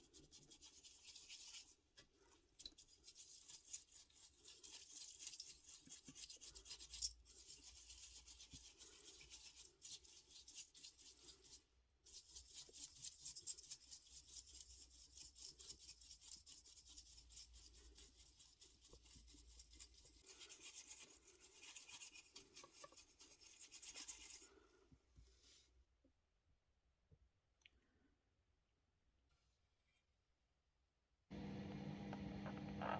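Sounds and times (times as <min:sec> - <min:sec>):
fast rubbing strokes on small part: 0:00.0 - 0:01.8, 0:02.8 - 0:24.5.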